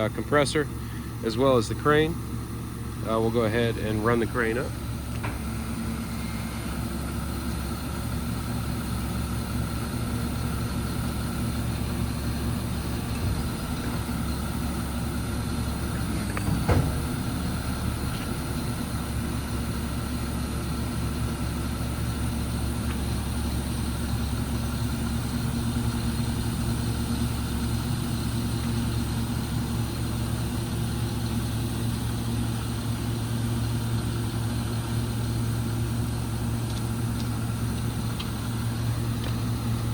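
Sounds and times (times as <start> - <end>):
diesel engine running: 0.0 - 39.9
sharp knock: 16.4 - 17.3.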